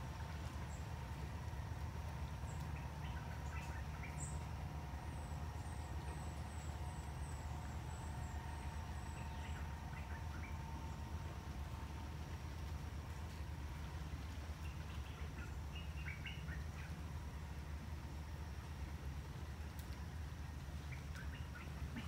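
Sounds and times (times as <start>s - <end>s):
steady low rumble: 0.0s - 22.0s
faint scattered calls: 0.1s - 11.9s, 20.4s - 22.0s
bird chirping: 2.5s - 4.5s, 5.1s - 11.0s, 14.6s - 17.0s.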